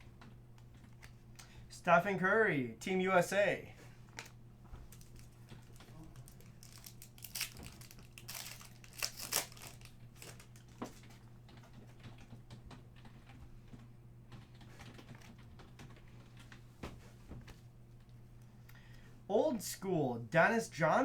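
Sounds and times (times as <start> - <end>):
low steady hum: 0.0 - 21.0
cards clicking and rustling: 4.1 - 11.2.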